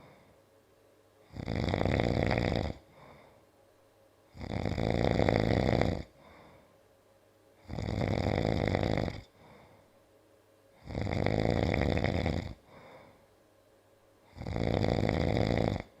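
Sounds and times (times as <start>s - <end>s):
soft breath: 0.0s - 0.5s, 2.8s - 3.6s, 6.1s - 6.9s, 9.2s - 10.1s, 12.6s - 13.4s
man snoring loudly: 1.3s - 2.8s, 4.4s - 6.1s, 7.6s - 9.3s, 10.8s - 12.6s, 14.3s - 15.9s.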